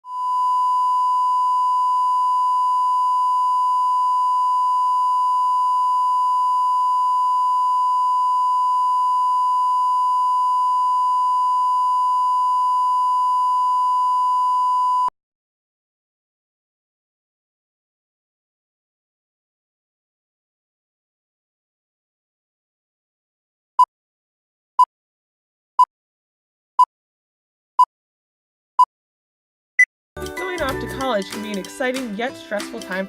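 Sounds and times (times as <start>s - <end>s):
electronic test tone: 0.0s - 15.1s.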